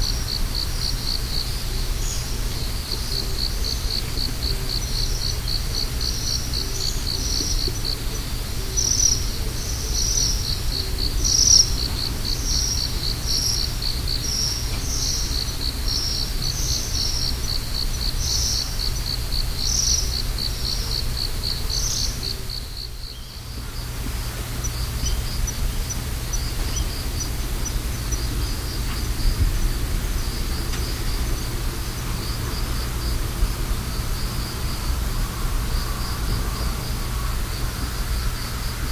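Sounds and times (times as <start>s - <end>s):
crickets chirping: 0.0s - 38.9s
louder insect chirp: 8.7s - 23.8s
steady low rumble: 22.4s - 38.9s.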